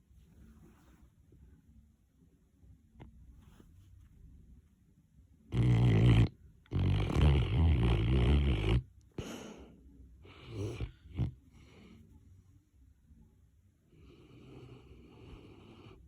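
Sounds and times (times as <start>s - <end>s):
dog snoring: 5.5s - 9.5s, 10.2s - 11.9s, 14.0s - 16.0s.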